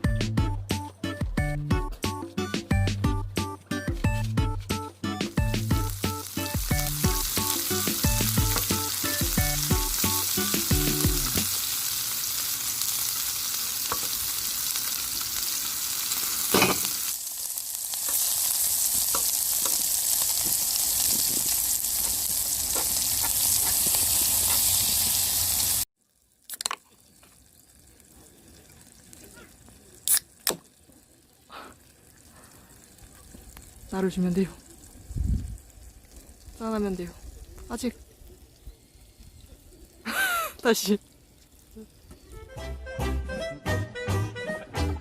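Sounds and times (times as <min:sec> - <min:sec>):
background music: 0:00.0 - 0:11.5, 0:42.4 - 0:45.0
food sizzling in a pan: 0:05.2 - 0:42.6
sharp pop: 0:16.5 - 0:16.9, 0:30.1 - 0:30.6.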